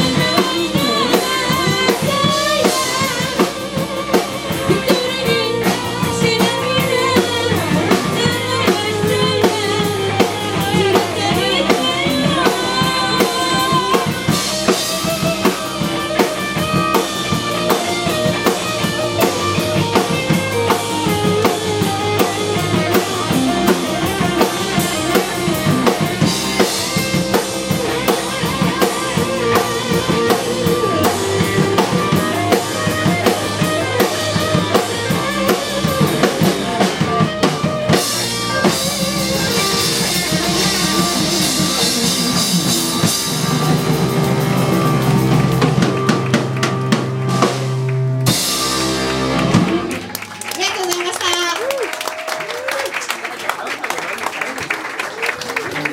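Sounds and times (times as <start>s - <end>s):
bending lead guitar melody: 0.0s - 51.6s
busy drum pattern: 0.0s - 51.6s.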